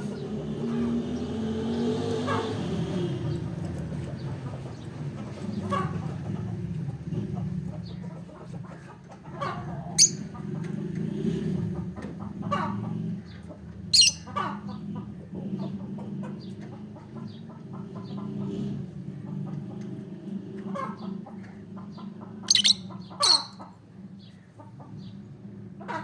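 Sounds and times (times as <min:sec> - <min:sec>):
lovebird chirping: 0:10.0 - 0:10.2, 0:14.0 - 0:14.3, 0:22.5 - 0:23.6
loud shrill bird calls: 0:14.0 - 0:14.3, 0:22.5 - 0:23.6.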